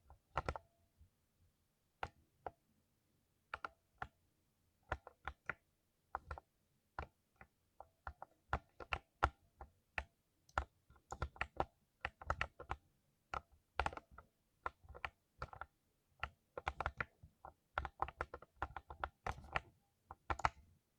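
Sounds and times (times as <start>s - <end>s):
mechanical keyboard typing: 8.2s - 9.3s, 10.5s - 17.1s, 17.7s - 20.6s.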